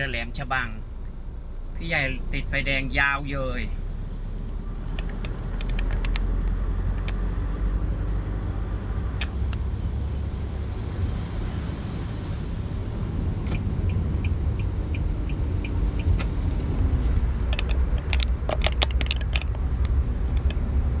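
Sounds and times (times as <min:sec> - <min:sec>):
vehicle driving rumble: 0:00.0 - 0:21.0
sharp clicks: 0:04.4 - 0:07.2, 0:13.4 - 0:16.7
rattles: 0:17.4 - 0:19.8.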